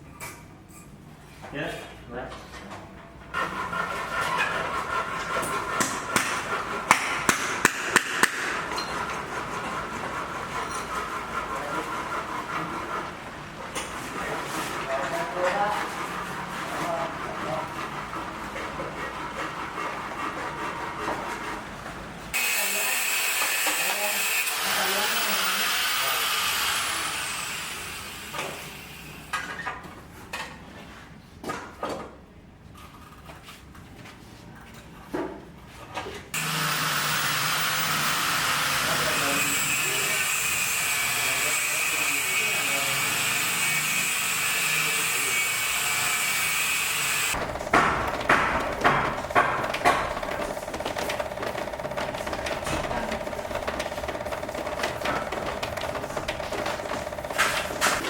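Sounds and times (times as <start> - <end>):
sharp hammer-like knocks: 5.8 - 8.6, 47.4 - 51.2
sharp knocks: 5.8 - 8.6, 47.4 - 58.0.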